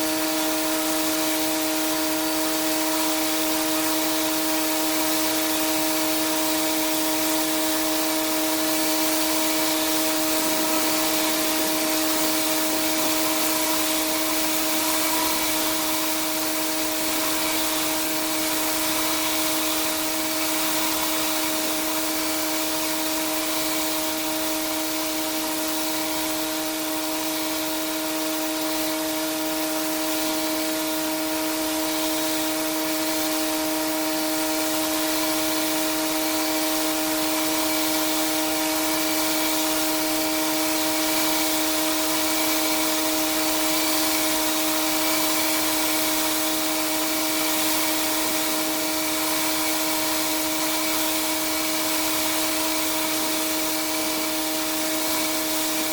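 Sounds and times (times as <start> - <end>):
high-pressure water spray hiss: 0.0 - 55.9
pressure washer whine: 0.0 - 55.9.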